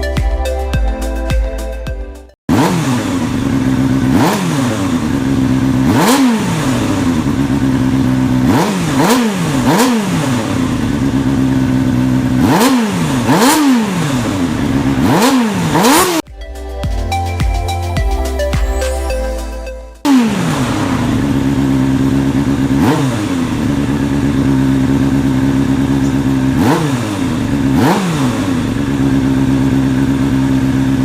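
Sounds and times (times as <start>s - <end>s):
motorcycle engine revving: 2.5s - 16.3s, 20.0s - 31.0s.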